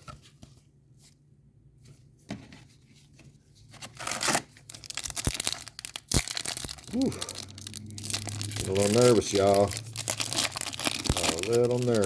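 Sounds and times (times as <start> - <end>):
wrapper tearing and crinkling: 3.8 - 12.0.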